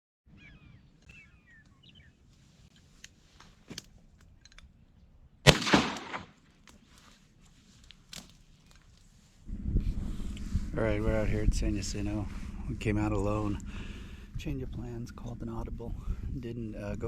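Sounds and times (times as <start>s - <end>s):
small birds chirping: 0.3s - 3.2s.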